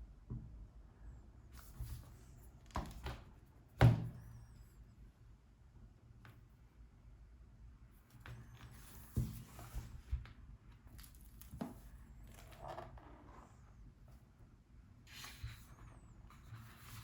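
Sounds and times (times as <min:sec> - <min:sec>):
soft thumps of book handling: 0:08.2 - 0:10.4.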